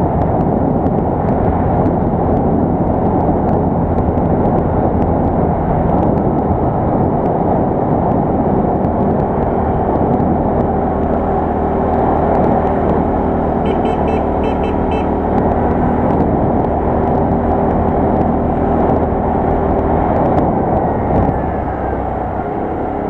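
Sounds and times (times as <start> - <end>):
quad bike engine running: 8.8 - 23.0
short high chirps: 13.7 - 15.2.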